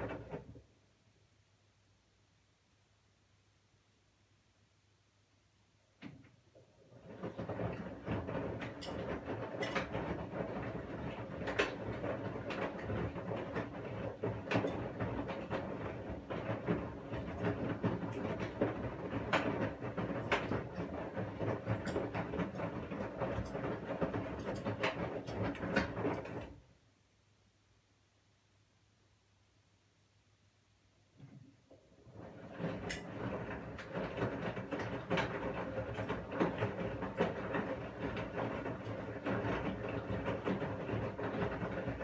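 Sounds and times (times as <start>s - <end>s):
washing machine motor hum: 0.0s - 0.6s, 6.0s - 26.8s, 31.2s - 42.0s.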